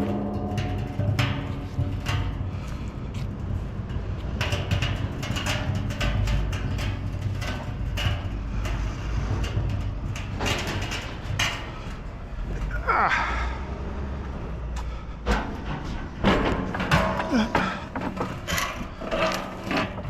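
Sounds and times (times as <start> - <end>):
barrel knocks and clatter: 0.0 - 12.7, 15.2 - 20.0.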